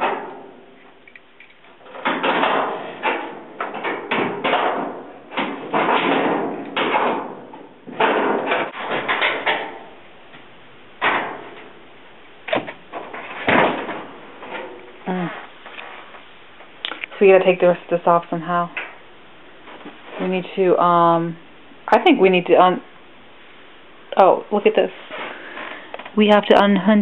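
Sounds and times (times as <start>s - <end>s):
sheet metal knocks and clatter: 0.0s - 0.8s, 1.8s - 10.0s, 11.0s - 11.8s, 12.5s - 15.0s.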